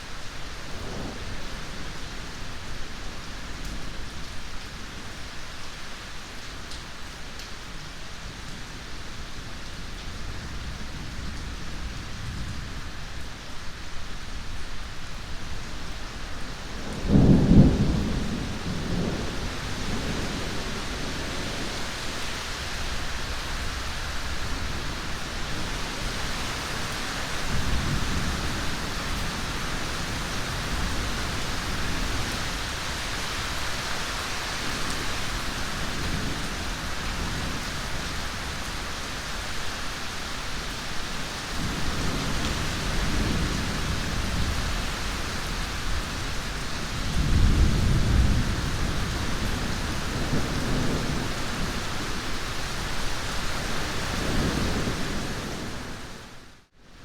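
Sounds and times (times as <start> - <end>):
steady rain: 0.0 - 57.0
thunder clap and rumbles: 16.8 - 23.1, 41.6 - 52.3.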